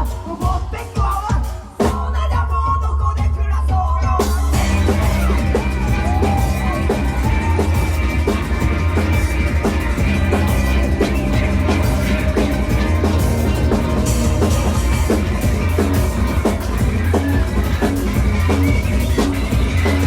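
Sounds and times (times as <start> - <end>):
drum kit steady beat: 0.0 - 2.5, 3.2 - 20.0
live rock band playing: 4.2 - 20.0.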